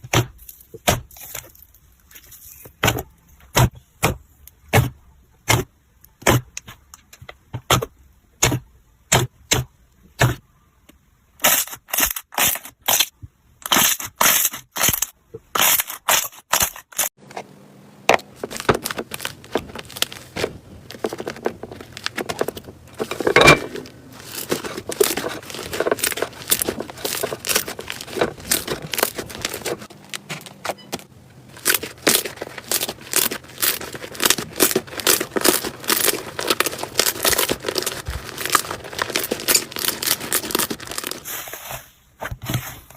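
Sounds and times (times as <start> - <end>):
slime popping and crackling: 18.2 - 23.5, 24.1 - 29.9, 31.5 - 41.2.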